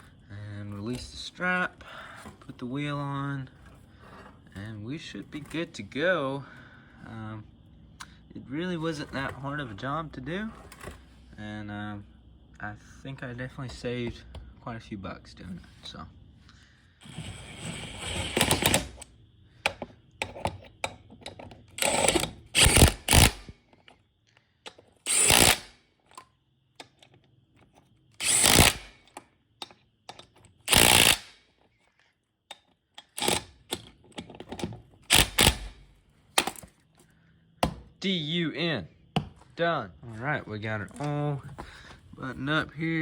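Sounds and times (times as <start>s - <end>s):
handheld power tool bursts: 18.2s - 19.0s, 21.8s - 23.6s, 25.0s - 25.8s, 28.2s - 29.2s, 30.6s - 31.5s, 33.0s - 33.8s, 35.0s - 36.6s
tools and parts clinking: 18.4s - 24.0s, 24.6s - 37.0s.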